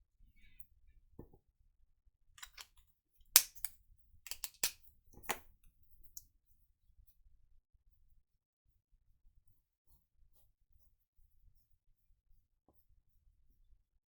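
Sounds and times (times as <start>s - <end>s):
craft tools clicking on a desk: 2.4s - 2.8s, 3.4s - 3.7s, 4.3s - 5.4s.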